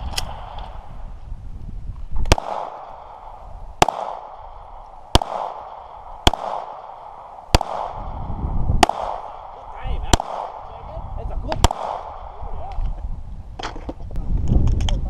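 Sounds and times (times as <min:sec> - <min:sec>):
rifle shots with echo: 0:02.2 - 0:10.9, 0:11.5 - 0:12.6.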